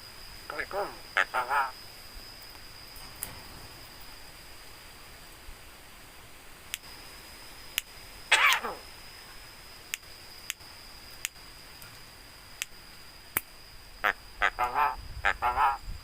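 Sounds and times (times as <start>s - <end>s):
steady high-pitched whine: 0.0s - 15.2s
myna call falling in pitch: 8.3s - 8.8s
sharp clicks: 9.9s - 10.6s, 12.6s - 13.5s.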